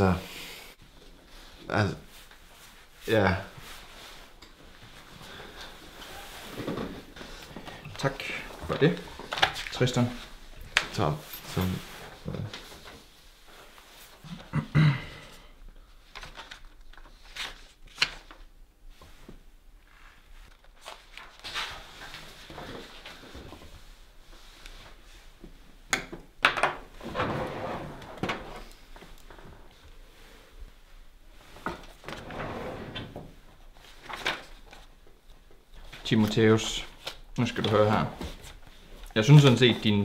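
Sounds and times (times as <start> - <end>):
handling knocks clicks and rustles: 6.5 - 13.0.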